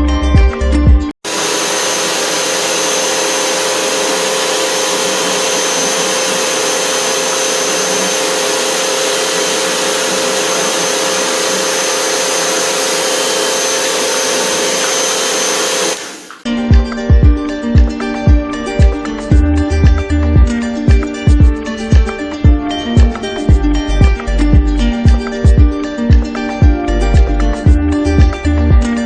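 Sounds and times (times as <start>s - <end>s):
cleaning machine rushing hiss: 1.2s - 16.4s
high whine: 1.2s - 16.4s
low motor hum: 1.3s - 16.4s.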